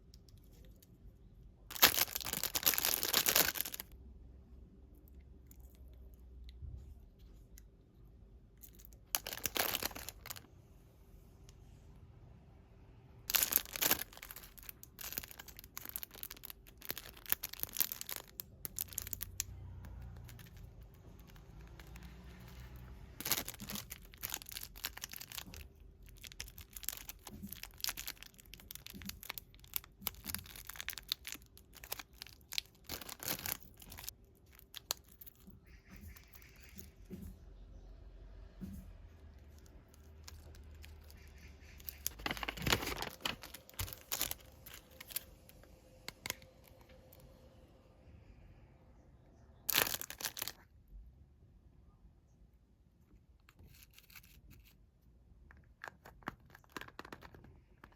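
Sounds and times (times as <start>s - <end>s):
packaging crinkling and tearing: 1.7s - 4.0s, 8.7s - 10.5s, 13.3s - 36.8s, 39.5s - 47.3s, 49.7s - 50.6s, 53.6s - 54.8s, 55.8s - 57.9s.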